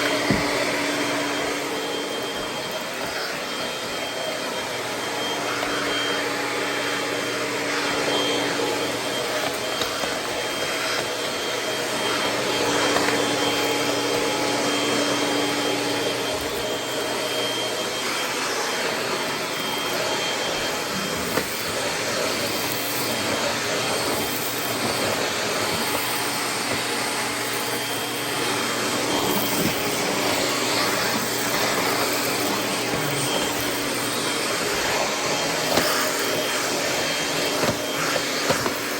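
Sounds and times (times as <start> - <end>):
vacuum cleaner running on carpet: 0.0 - 38.9.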